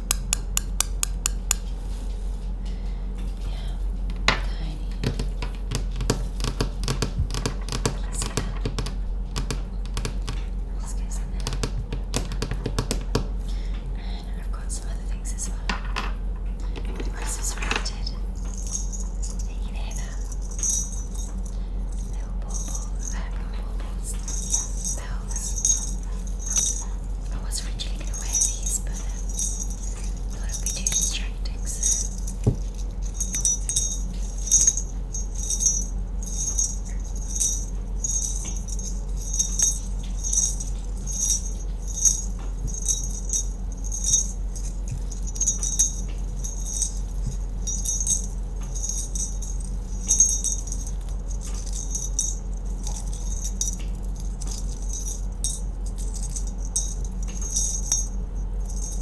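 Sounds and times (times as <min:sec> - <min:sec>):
jingle bells shaken: 0:17.0 - 0:59.0.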